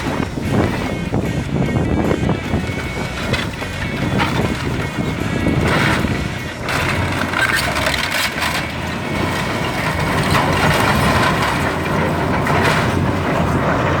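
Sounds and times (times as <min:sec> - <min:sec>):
demolition machinery rumble: 0:00.0 - 0:14.0
timber cracking and splintering: 0:03.0 - 0:13.2.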